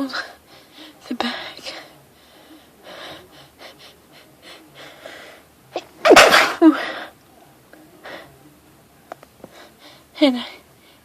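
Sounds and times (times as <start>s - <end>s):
soft breaths and sharp inhale: 0.3s - 5.5s
woman sneezing: 6.0s - 7.0s.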